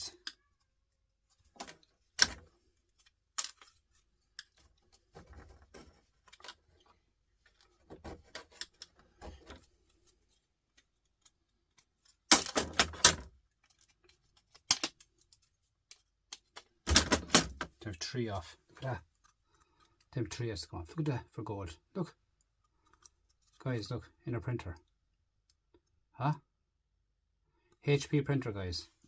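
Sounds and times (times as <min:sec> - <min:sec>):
printer parts clicking and rattling: 0:01.4 - 0:17.8.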